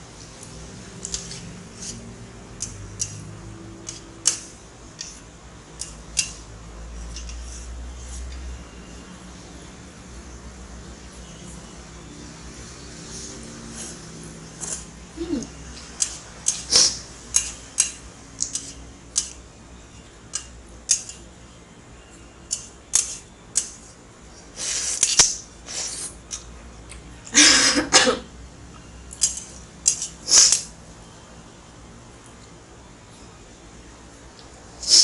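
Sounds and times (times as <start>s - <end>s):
utensils clicking against bowl: 1.0s - 5.2s, 15.8s - 19.4s, 22.5s - 23.8s, 29.1s - 30.7s.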